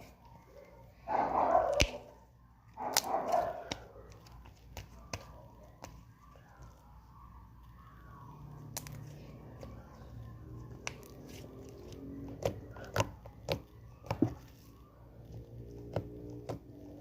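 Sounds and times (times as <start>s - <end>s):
dog barking: 1.0s - 2.2s, 2.8s - 3.9s.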